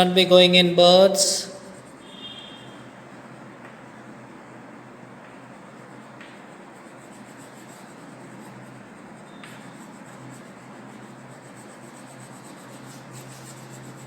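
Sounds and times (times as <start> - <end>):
colouring stick scratching paper: 5.8 - 14.0.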